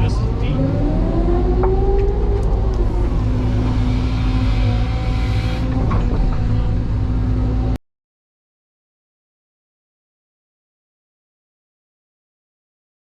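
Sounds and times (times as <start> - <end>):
excavator engine and hydraulics: 0.0 - 7.8.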